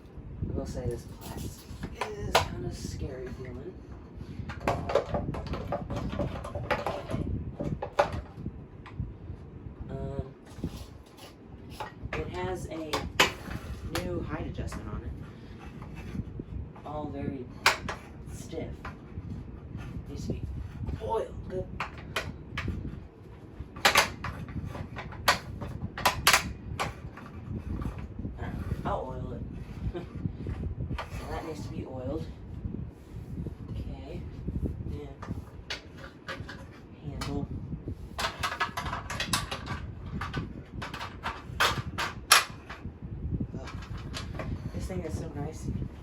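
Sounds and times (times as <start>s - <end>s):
vacuum cleaner parts clicking: 23.8s - 28.0s, 38.2s - 42.8s.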